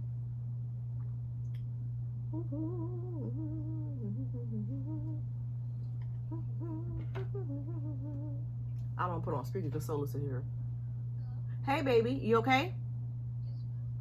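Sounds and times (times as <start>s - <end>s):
low electrical hum: 0.0s - 14.0s
woman humming softly: 2.3s - 5.3s, 6.2s - 8.5s.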